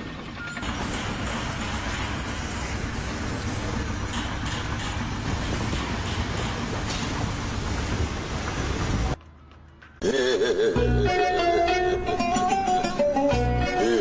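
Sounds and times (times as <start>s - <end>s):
steady machinery noise: 0.0s - 10.2s.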